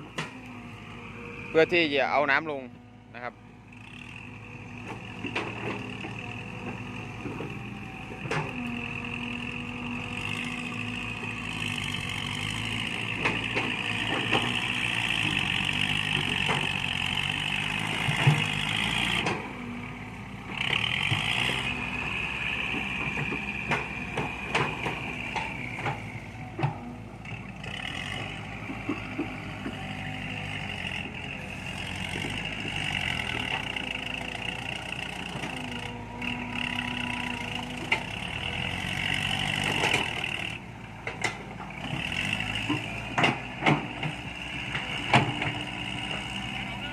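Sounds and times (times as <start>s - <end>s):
excavator diesel engine: 0.0s - 46.9s
knocks and clanks: 12.8s - 16.8s, 22.6s - 26.9s.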